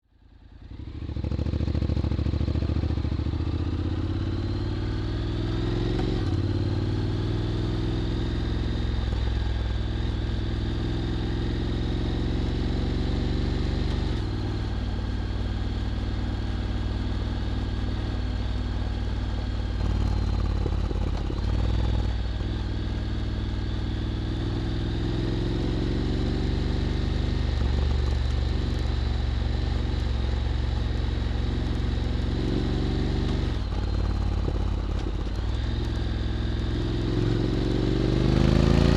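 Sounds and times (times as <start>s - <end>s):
motorcycle engine running: 0.1s - 38.9s.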